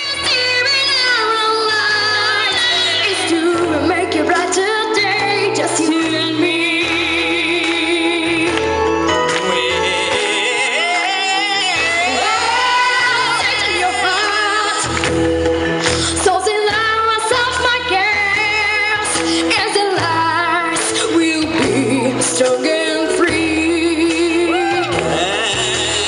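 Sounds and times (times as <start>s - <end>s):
bass line: 0.0s - 26.0s
pop song singing: 0.0s - 26.0s.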